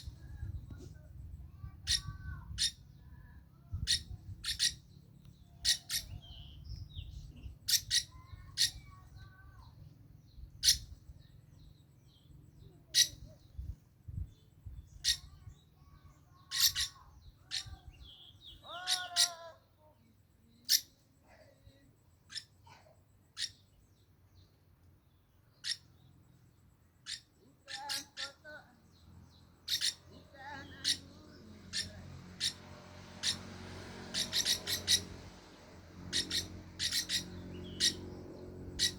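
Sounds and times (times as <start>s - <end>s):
parrot warbling calls: 1.8s - 2.8s, 5.6s - 6.5s, 18.6s - 19.6s, 27.1s - 28.4s, 29.7s - 32.6s, 34.0s - 35.2s, 36.0s - 38.1s
parrot screeching calls: 18.7s - 19.5s, 29.7s - 30.1s, 34.1s - 35.2s, 36.1s - 38.0s.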